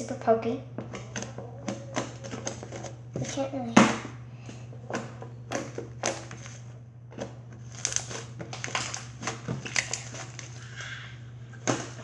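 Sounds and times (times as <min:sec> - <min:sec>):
steady low hum: 0:00.0 - 0:12.0
slime crackling and popping: 0:07.6 - 0:10.5.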